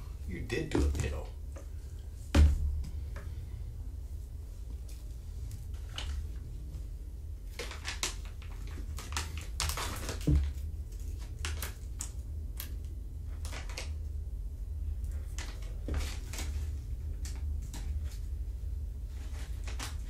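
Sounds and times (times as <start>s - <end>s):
steady low hum: 0.0s - 9.8s, 10.4s - 20.0s
thump: 2.3s - 2.9s.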